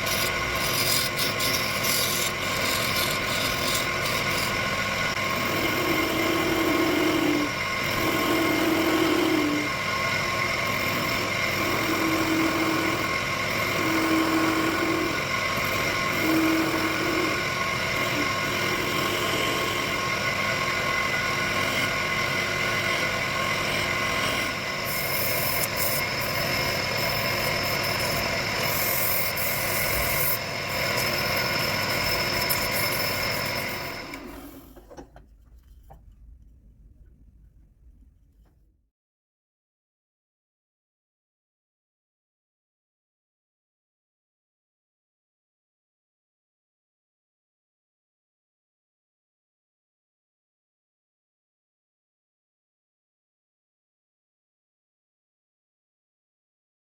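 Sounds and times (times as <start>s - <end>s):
wood lathe motor humming: 0.0s - 35.0s.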